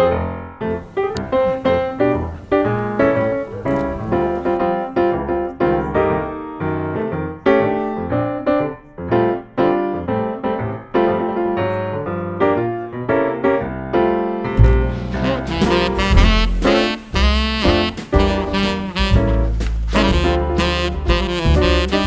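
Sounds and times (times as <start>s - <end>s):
piano music: 0.8s - 5.5s, 14.2s - 22.0s.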